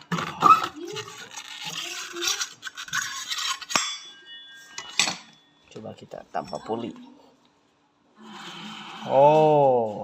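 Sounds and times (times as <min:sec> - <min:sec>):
steel parts scraping and clinking: 0:00.9 - 0:05.5.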